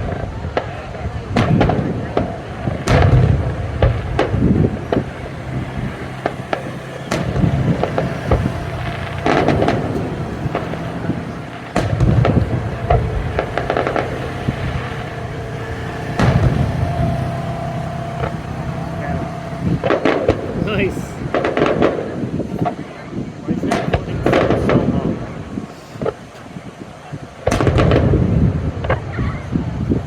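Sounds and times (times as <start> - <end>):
deep fireworks booms: 0.0 - 30.0
fireworks bangs and crackles: 0.0 - 30.0.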